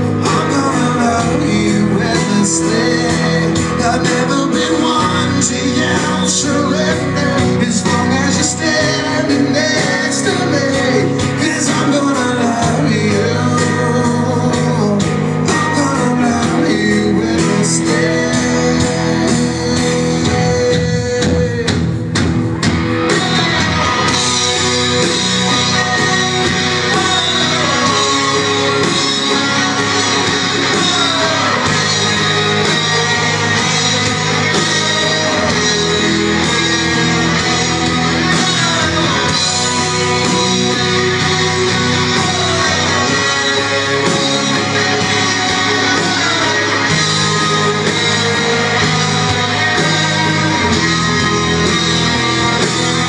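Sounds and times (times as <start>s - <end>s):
rock band playing: 0.0s - 53.0s
lead guitar bending notes: 22.0s - 53.0s.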